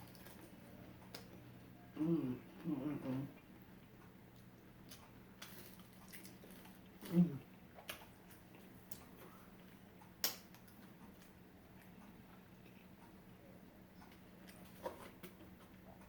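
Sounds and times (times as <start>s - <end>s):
quiet chewing: 0.0s - 16.0s
low vocal hum: 1.9s - 3.4s, 7.0s - 7.5s.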